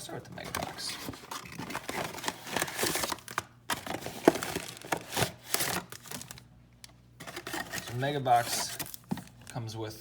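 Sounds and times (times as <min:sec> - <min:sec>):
cardboard box tearing and crackling: 0:01.3 - 0:06.3.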